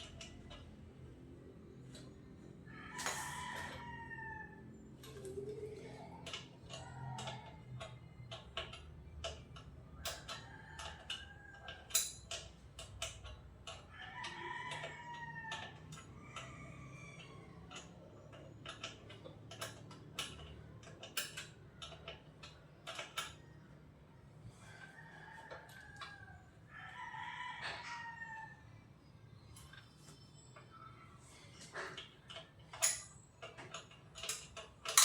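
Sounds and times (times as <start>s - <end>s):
rooster crowing: 2.6s - 4.8s, 13.9s - 17.7s, 24.6s - 28.7s.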